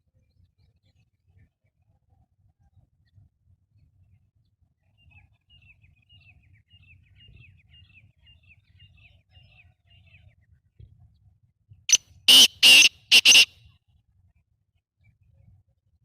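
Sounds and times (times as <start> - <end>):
faint bird chirping: 12.3 - 13.5.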